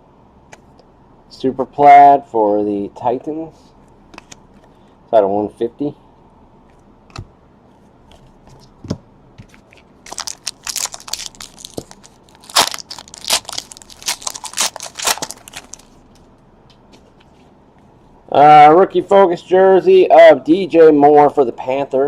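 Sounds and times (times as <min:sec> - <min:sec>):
plastic packaging crinkling: 0:09.6 - 0:16.0.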